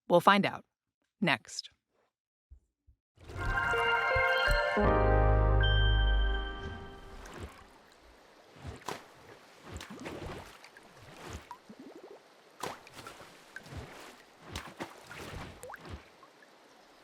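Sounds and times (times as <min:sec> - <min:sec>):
water plops and gurgles: 0:06.7 - 0:17.0.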